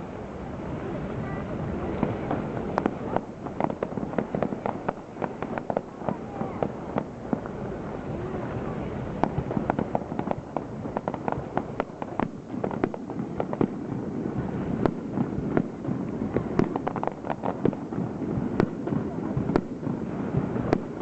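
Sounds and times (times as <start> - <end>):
fireworks cracks and bangs: 1.1 - 21.0.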